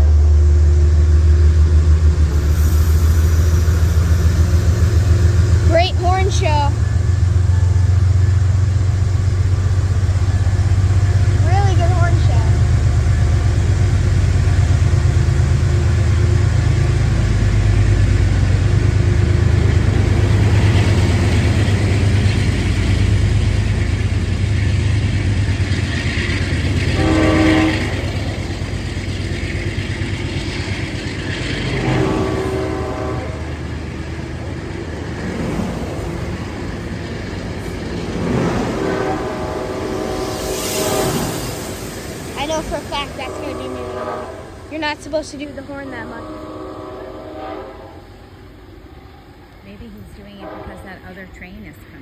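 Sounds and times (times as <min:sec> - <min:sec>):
diesel locomotive droning: 0:00.0 - 0:52.0
locomotive horn blasts: 0:26.9 - 0:28.8, 0:31.5 - 0:33.9, 0:38.4 - 0:41.6, 0:42.4 - 0:48.2, 0:50.1 - 0:51.5.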